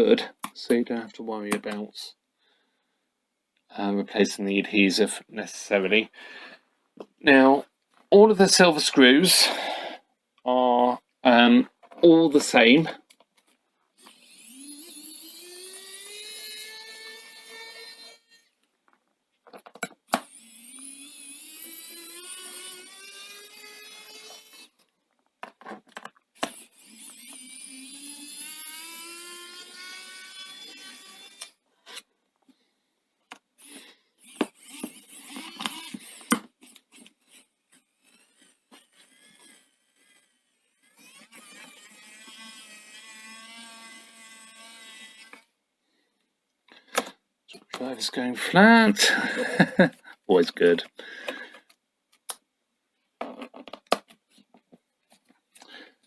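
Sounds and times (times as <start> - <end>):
electric screwdriver whirring: 14.0 - 18.5, 20.1 - 24.8, 26.4 - 32.1, 33.6 - 45.5.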